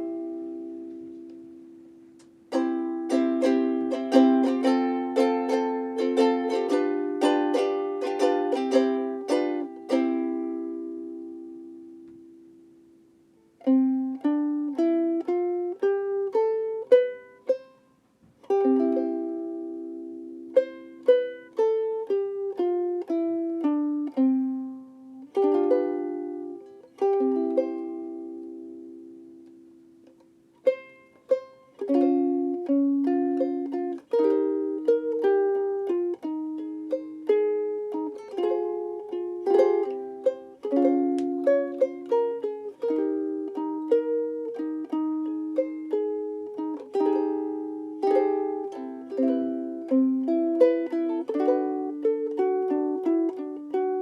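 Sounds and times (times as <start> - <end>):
ukulele plucked notes and chords: 0.0 - 54.0.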